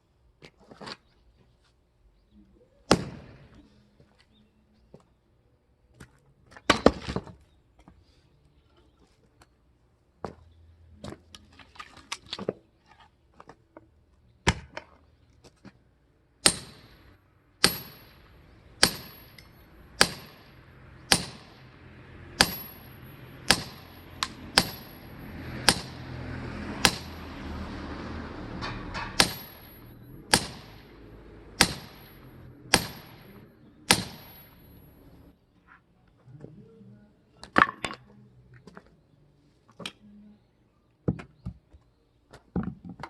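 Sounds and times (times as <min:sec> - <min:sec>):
ringing strikes splitting firewood: 0:16.4 - 0:17.0, 0:17.6 - 0:27.4, 0:28.4 - 0:34.6.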